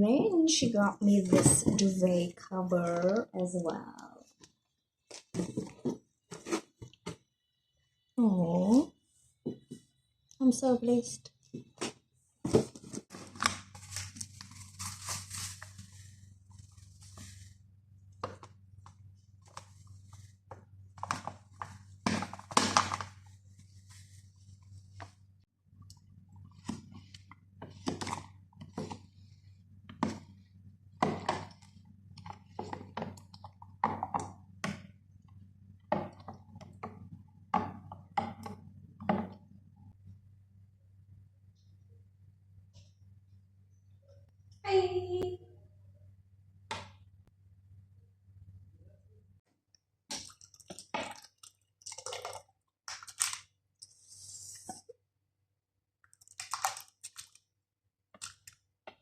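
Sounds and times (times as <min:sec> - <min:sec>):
items thumping and knocking: 0:00.6 - 0:02.0, 0:05.1 - 0:07.3, 0:11.5 - 0:13.9, 0:20.5 - 0:23.2, 0:31.0 - 0:31.6, 0:35.8 - 0:39.5
packaging rustling: 0:12.5 - 0:17.5.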